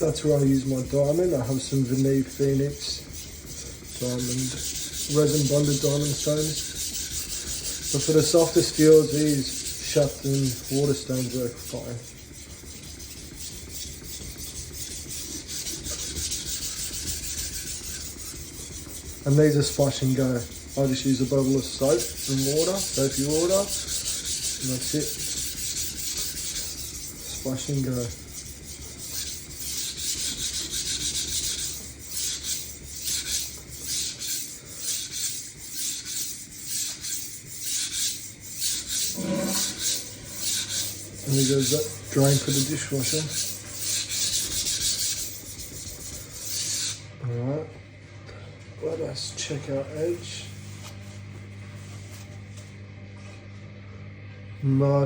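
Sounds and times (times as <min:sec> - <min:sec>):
knife scraping on whetstone: 0:00.0 - 0:47.1.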